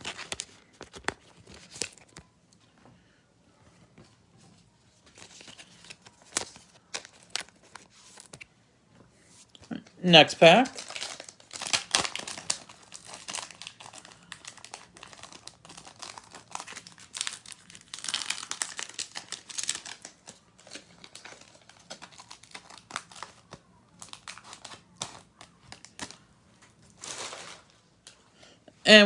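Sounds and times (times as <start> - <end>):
foil wrapper tearing and crinkling: 10.6 - 26.2, 27.0 - 27.7.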